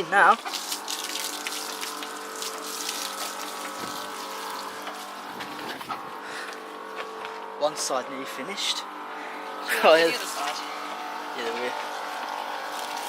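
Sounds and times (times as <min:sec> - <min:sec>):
pressure washer pump humming: 0:00.0 - 0:13.0
water jet spraying: 0:00.4 - 0:06.7, 0:09.6 - 0:13.0.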